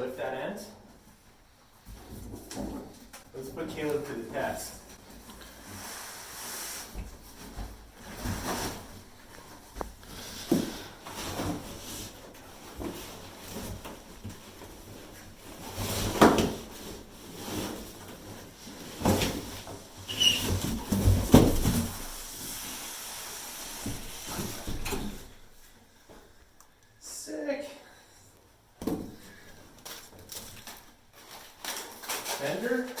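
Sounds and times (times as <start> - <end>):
cardboard box knocks and scrapes: 20.4 - 22.2.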